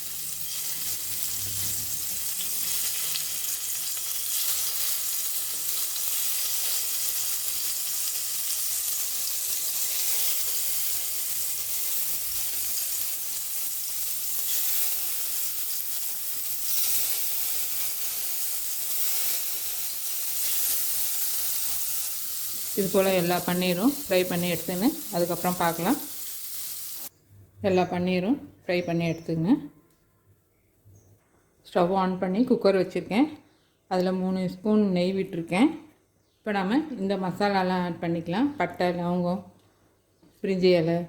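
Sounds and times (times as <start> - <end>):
cheese cubes sizzling in oil: 0.0 - 27.1.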